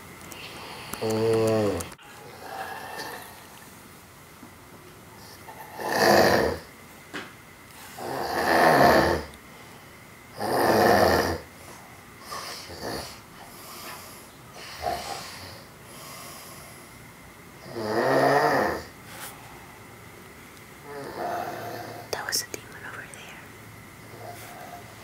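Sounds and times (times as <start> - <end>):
man snoring loudly: 1.0 - 3.4, 5.2 - 6.7, 8.0 - 9.3, 10.3 - 11.5, 12.2 - 13.7, 14.6 - 16.7, 17.6 - 19.0, 20.8 - 22.1
faint breaths: 11.6 - 17.1.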